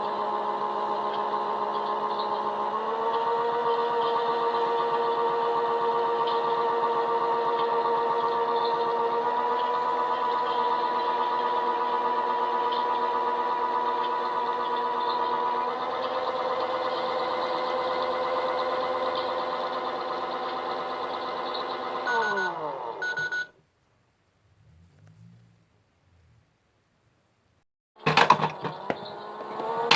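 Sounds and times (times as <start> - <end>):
small electric motor whining: 0.0 - 23.3, 28.1 - 29.9
short beeps: 22.1 - 23.5.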